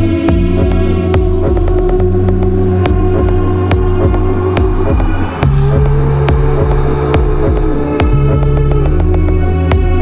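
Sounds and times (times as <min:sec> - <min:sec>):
electronic music: 0:00.0 - 0:10.0
low bass tones: 0:00.0 - 0:10.0.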